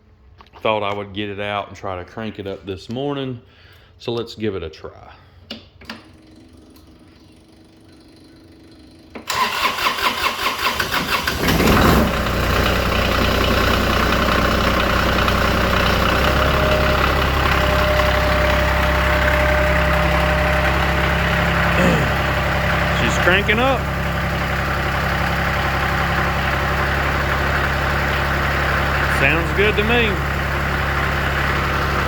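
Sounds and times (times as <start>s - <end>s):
starter motor cranking: 5.9s - 32.0s
diesel tractor engine idling: 9.3s - 32.0s.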